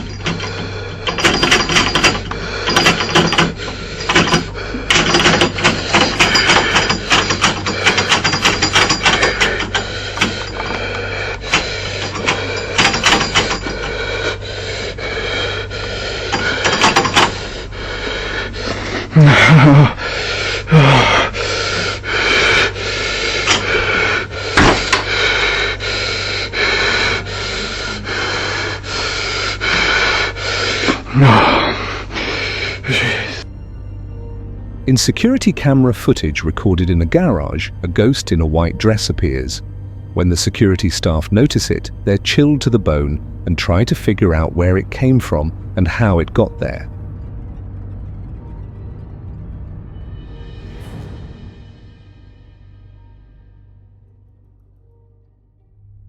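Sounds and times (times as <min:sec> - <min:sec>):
man gasping and breathing hard: 0:00.0 - 0:33.4.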